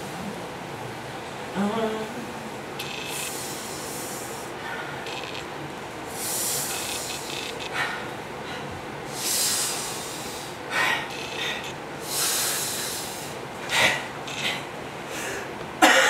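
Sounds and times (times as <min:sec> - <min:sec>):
steady background hiss: 0:00.0 - 0:16.0.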